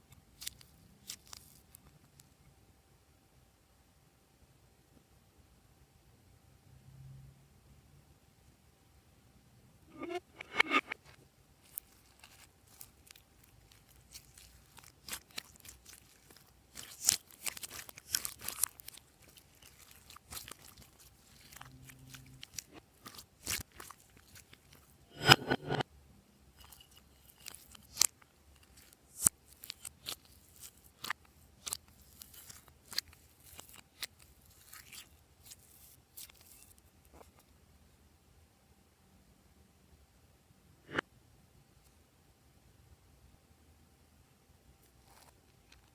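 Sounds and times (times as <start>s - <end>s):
slime squished by hand: 11.7s - 24.8s.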